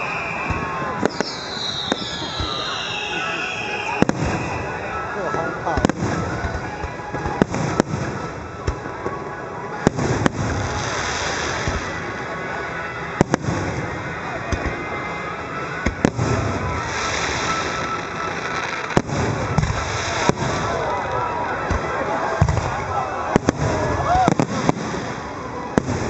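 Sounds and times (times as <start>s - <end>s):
firework crackling hiss: 0.0s - 5.0s, 9.8s - 12.4s, 15.9s - 21.2s, 22.6s - 26.0s
firework bangs: 0.0s - 26.0s.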